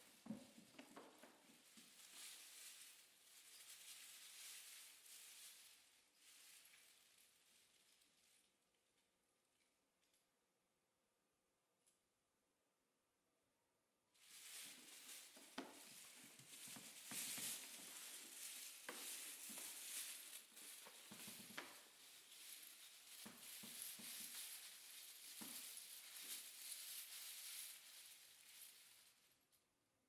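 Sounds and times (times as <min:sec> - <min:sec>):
crackling and sizzling noise: 0:14.2 - 0:29.4.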